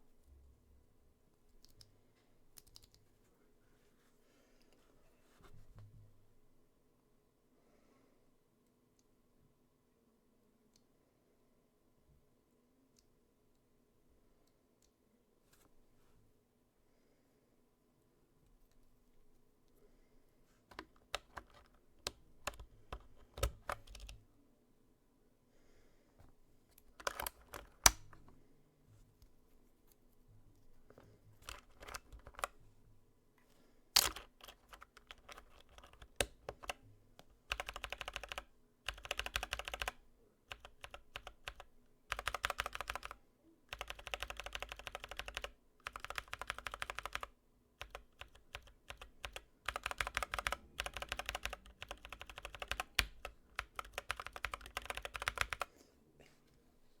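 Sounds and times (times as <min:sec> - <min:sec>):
mechanical keyboard typing: 0:02.6 - 0:03.0, 0:20.7 - 0:24.2, 0:26.8 - 0:28.2, 0:31.4 - 0:32.6, 0:34.0 - 0:36.8, 0:37.4 - 0:55.7.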